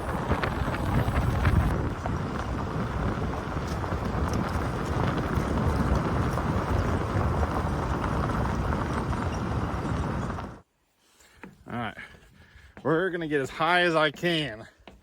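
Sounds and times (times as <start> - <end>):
gravel crunches and rattles: 0.0 - 10.6
tyre and road noise: 0.0 - 10.6.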